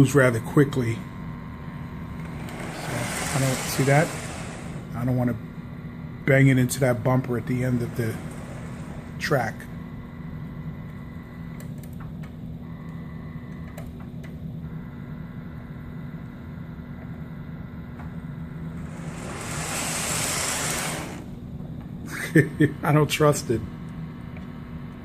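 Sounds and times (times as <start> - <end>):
model train electric hum: 0.0 - 11.7, 14.6 - 25.0
hiss: 2.5 - 4.9, 18.8 - 21.4.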